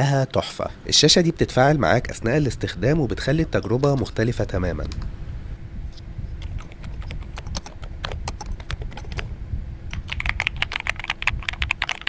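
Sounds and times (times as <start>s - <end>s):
mechanical keyboard typing: 6.4s - 9.3s, 9.9s - 12.0s.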